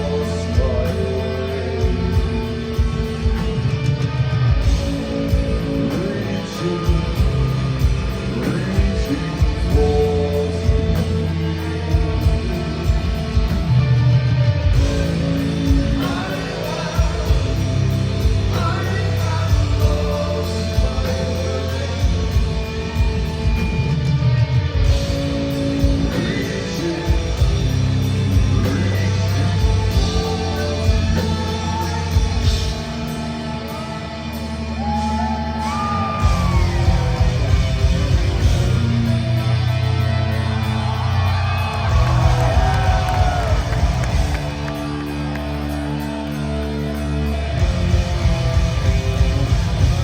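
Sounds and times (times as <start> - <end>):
person singing: 0.0 - 23.6, 25.0 - 40.1
heavy metal band playing live: 0.0 - 50.0.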